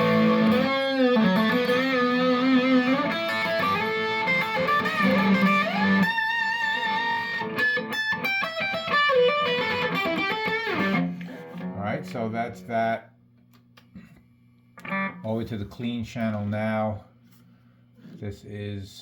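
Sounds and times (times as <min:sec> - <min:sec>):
distorted electric guitar lead: 0:00.0 - 0:12.7, 0:14.8 - 0:15.3.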